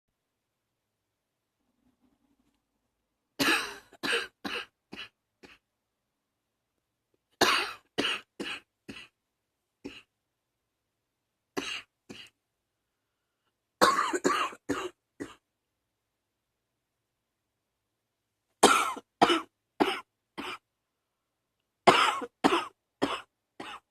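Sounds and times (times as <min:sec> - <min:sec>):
person coughing: 0:03.4 - 0:05.6, 0:07.4 - 0:09.2, 0:09.8 - 0:10.1, 0:11.6 - 0:12.4, 0:13.8 - 0:15.4, 0:18.6 - 0:20.6, 0:21.9 - 0:23.9.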